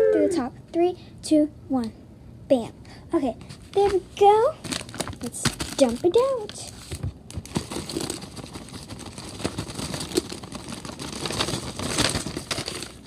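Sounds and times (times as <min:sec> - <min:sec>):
plastic wrappers crinkling: 0:03.6 - 0:13.0
small items knocking and clicking: 0:04.6 - 0:06.7, 0:07.3 - 0:13.0.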